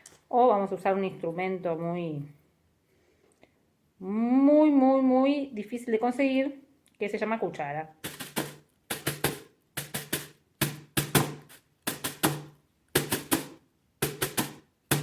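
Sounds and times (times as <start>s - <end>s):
spoon beating a toy drum: 8.0s - 15.0s.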